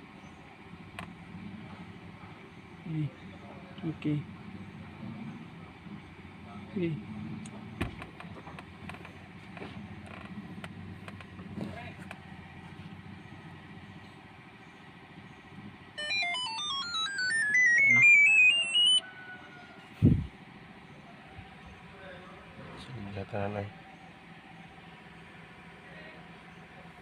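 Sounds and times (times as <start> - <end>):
rising electronic beeps: 16.0 - 19.1.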